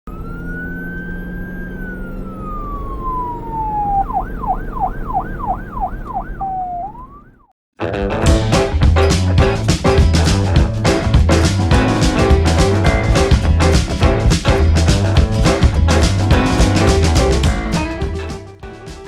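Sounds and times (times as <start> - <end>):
police siren wailing and yelping: 0.1 - 7.5
music with drums: 7.9 - 19.0.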